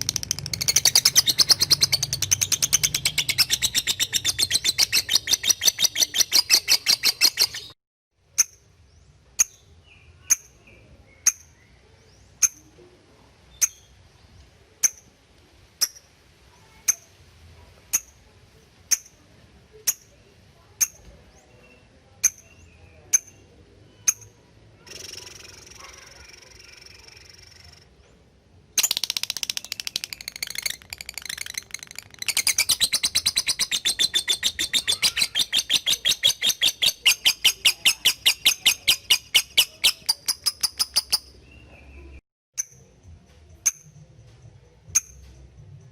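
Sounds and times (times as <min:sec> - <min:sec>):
lovebird chattering trill: 0:00.0 - 0:07.8, 0:10.2 - 0:11.6, 0:12.4 - 0:12.7, 0:13.5 - 0:14.0, 0:14.8 - 0:15.1, 0:17.9 - 0:18.2, 0:22.2 - 0:27.9, 0:28.8 - 0:41.6, 0:44.9 - 0:45.2
lovebird sharp chips: 0:28.8 - 0:41.4.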